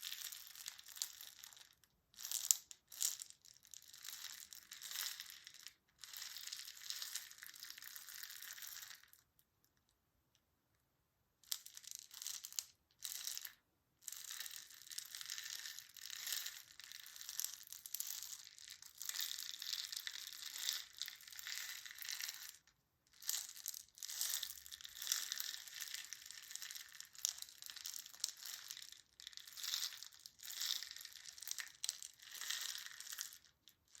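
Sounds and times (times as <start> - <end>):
crisp crinkling and crushing: 23.3 - 34.0.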